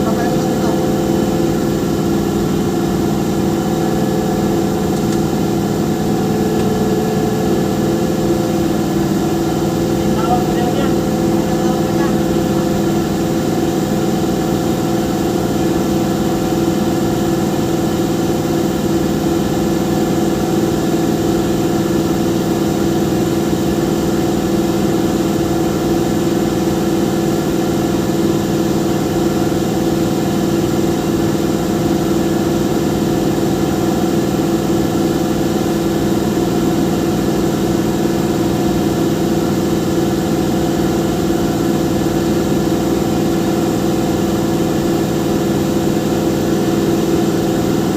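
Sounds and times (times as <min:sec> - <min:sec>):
machinery droning: 0:00.0 - 0:13.8.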